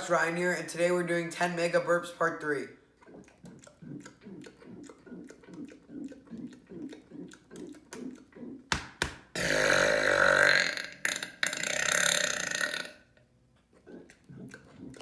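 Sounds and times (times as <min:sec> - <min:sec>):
long loud burp: 0:09.4 - 0:13.2.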